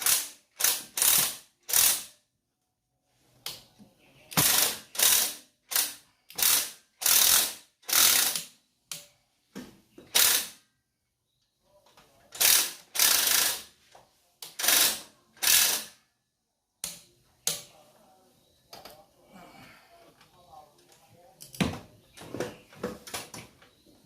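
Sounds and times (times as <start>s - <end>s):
ratchet wrench clicking: 0.0s - 2.2s, 4.4s - 8.5s, 10.1s - 10.6s, 12.4s - 13.7s, 14.5s - 16.0s.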